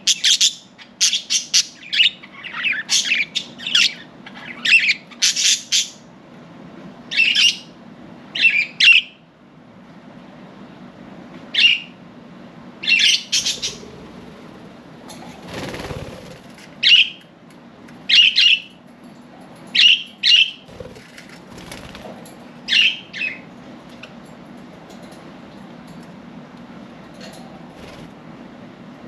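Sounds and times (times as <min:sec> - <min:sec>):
budgerigars chirping: 0:12.9 - 0:14.0
wings fluttering: 0:15.2 - 0:16.8, 0:20.7 - 0:22.4, 0:27.7 - 0:28.2.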